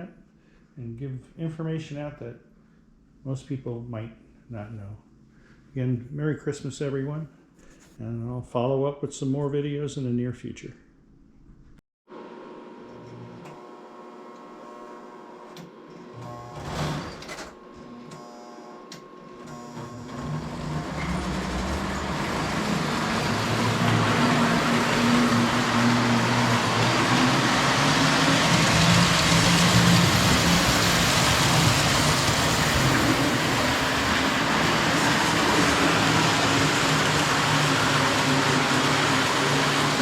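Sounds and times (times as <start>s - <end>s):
low motor hum: 19.5s - 40.0s
model train running on track: 20.1s - 40.0s.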